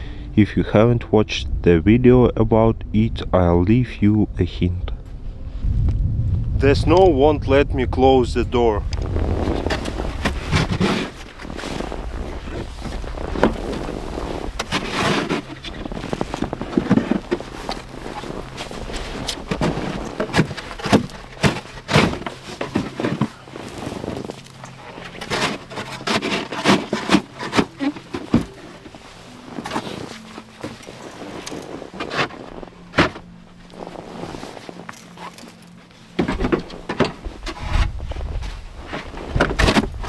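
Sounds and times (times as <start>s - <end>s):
snow scraping and thudding: 5.0s - 40.0s.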